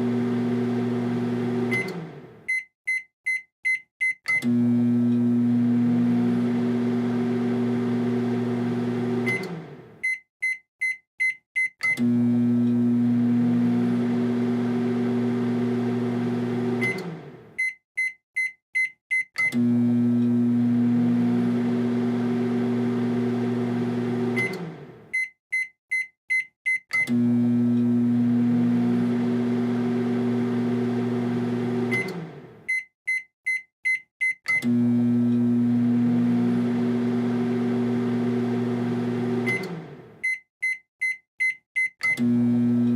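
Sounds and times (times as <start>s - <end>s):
microwave oven humming: 0.0s - 2.4s, 4.4s - 9.9s, 12.0s - 17.5s, 19.5s - 25.1s, 27.1s - 32.7s, 34.6s - 40.2s, 42.1s - 42.9s
high microwave beeps: 39.4s - 42.3s.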